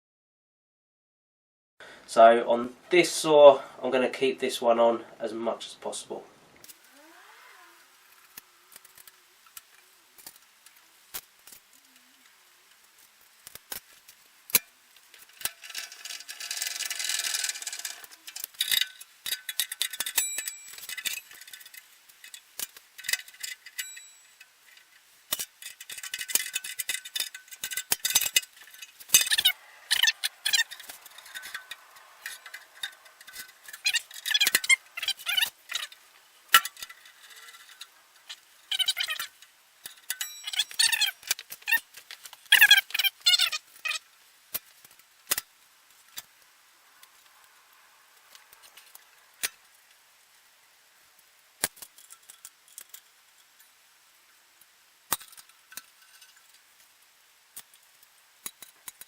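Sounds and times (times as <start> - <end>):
metal parts and tools clinking: 12.7 - 46.4, 48.3 - 49.7, 51.6 - 53.8, 55.1 - 56.7, 57.6 - 59.0.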